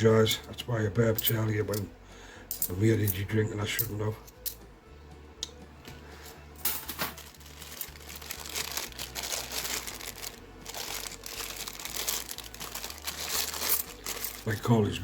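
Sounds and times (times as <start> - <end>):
bag crinkling and rustling: 6.9 - 15.0.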